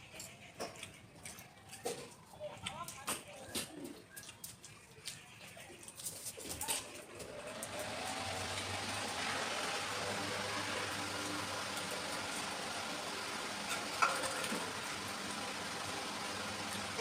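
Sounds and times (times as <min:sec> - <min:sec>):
motor hum: 0:07.1 - 0:17.0.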